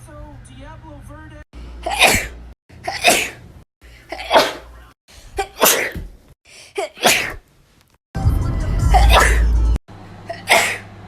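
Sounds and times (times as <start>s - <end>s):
person sneezing: 1.8s - 3.4s, 4.1s - 4.7s, 5.4s - 7.4s, 8.9s - 9.4s, 10.3s - 10.8s.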